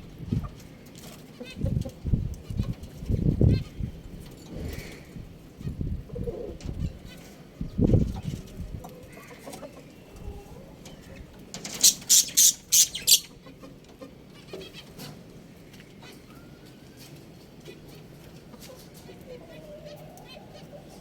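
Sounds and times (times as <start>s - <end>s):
sharp high-pitched bird calls: 11.7s - 13.4s
low short bird calls: 11.8s - 13.4s.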